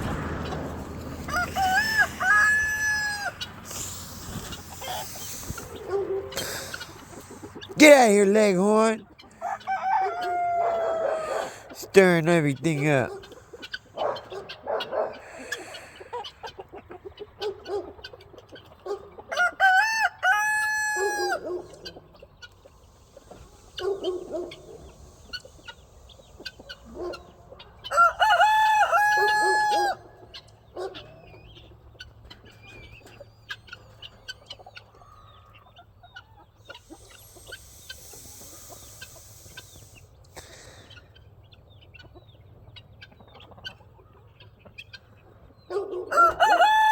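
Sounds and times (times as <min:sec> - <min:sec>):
chickens clucking: 0:01.2 - 0:07.8, 0:09.2 - 0:11.8, 0:13.1 - 0:46.9
rooster crowing: 0:01.3 - 0:03.4, 0:09.3 - 0:11.6, 0:19.3 - 0:21.5, 0:27.9 - 0:30.1, 0:46.0 - 0:46.9.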